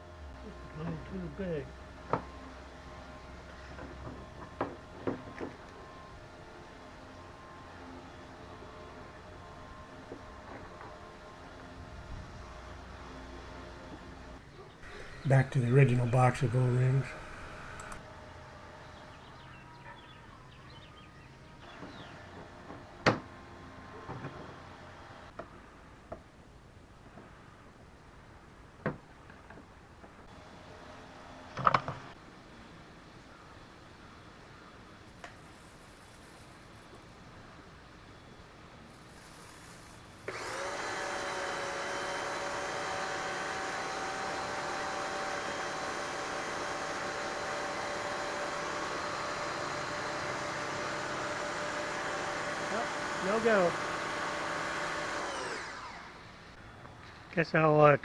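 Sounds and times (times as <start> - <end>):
pressure washer motor and pump: 14.8 - 18.0, 39.2 - 56.6.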